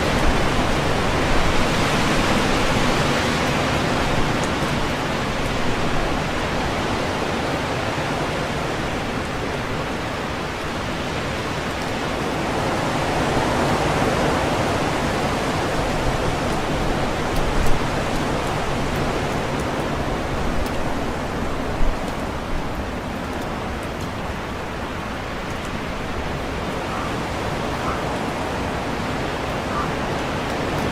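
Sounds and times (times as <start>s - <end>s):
strong wind rushing through leaves: 0.0s - 30.9s.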